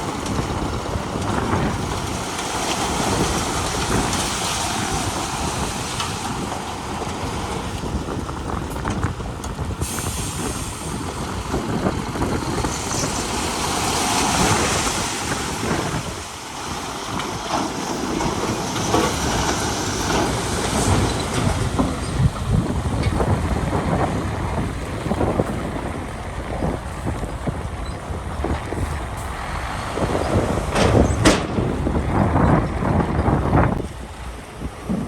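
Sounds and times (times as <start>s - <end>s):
diesel engine running: 0.0s - 35.0s
metallic clanking and rattling: 30.2s - 32.8s.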